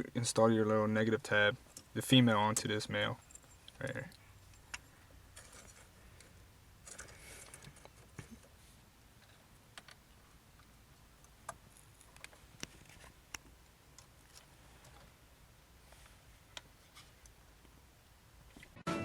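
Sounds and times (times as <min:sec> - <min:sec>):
small parts clicking and tapping: 0:02.5 - 0:08.3.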